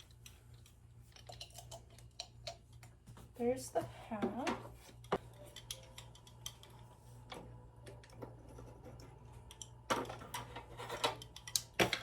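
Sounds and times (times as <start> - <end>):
clicks and taps of kitchen items: 1.2 - 6.8.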